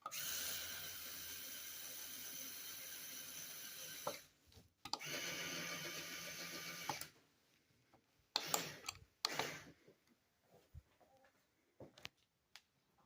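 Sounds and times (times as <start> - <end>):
small electric motor whirring: 0.1 - 4.2, 5.0 - 7.1.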